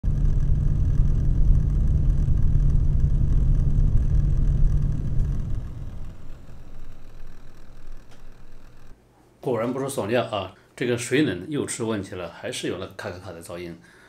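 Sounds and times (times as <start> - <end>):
cooler pump low hum: 0.0 - 9.0
rough clacking rattle: 0.0 - 9.0.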